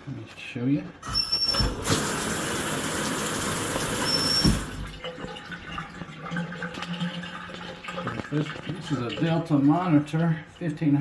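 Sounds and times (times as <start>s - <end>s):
shower valve handle squealing: 1.0s - 2.0s, 3.7s - 4.8s
water rushing from shower: 1.1s - 10.2s.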